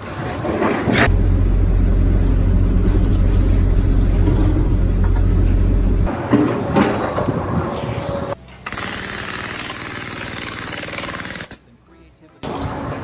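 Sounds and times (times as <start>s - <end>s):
loud low rumble: 1.0s - 8.3s.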